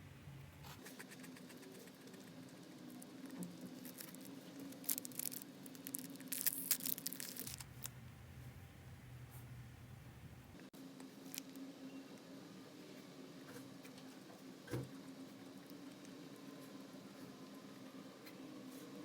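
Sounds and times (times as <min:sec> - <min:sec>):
steady low hum: 0:00.0 - 0:19.0
snack packaging crackling: 0:03.0 - 0:08.0.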